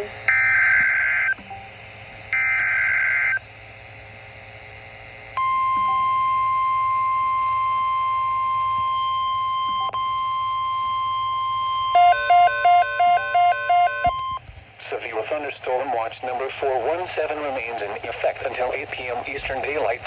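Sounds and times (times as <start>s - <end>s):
steady warning alarm tone: 0.0s - 4.3s, 5.1s - 14.5s
pulsing beep: 5.4s - 14.4s.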